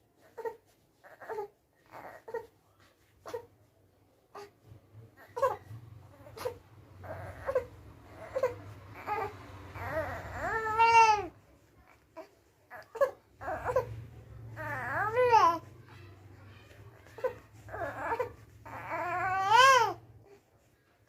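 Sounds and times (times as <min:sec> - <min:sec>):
baby cooing and gurgling: 0:05.2 - 0:11.3, 0:11.9 - 0:15.7, 0:17.0 - 0:20.0.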